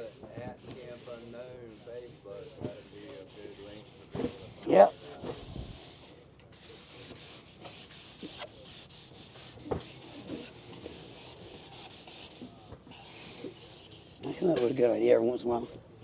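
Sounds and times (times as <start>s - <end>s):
faint rubbing and scraping: 0.0s - 15.7s.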